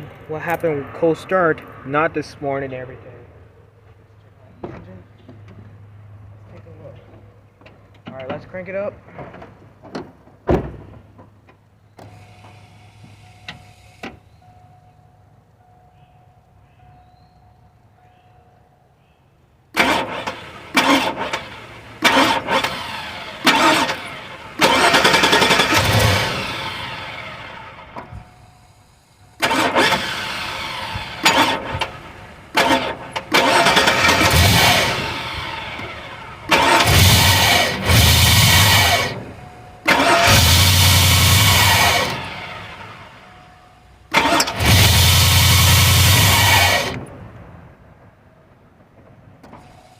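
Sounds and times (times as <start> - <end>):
engine cranking without starting: 12.0 - 14.3, 19.8 - 47.1.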